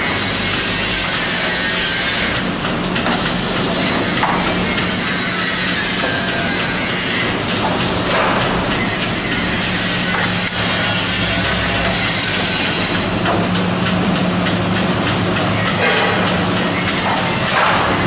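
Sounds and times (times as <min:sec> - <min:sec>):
wood-processing machinery hissing: 0:00.0 - 0:18.0.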